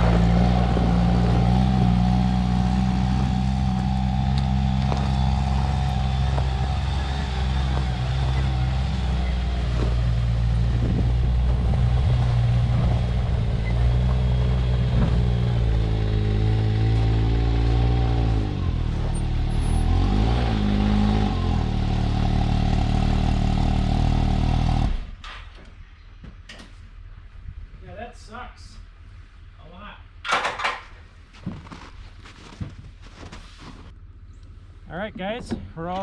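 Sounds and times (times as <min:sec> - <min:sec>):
vehicle engine running: 0:00.0 - 0:25.1.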